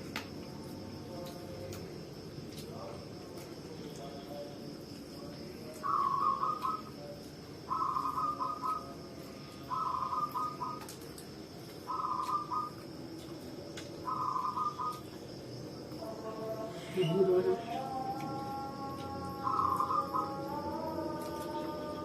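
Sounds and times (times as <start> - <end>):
high insect drone: 0.0 - 22.0
bird calling: 5.8 - 6.9, 7.7 - 8.9, 9.7 - 10.9, 11.8 - 12.8, 14.0 - 15.2, 19.4 - 20.5.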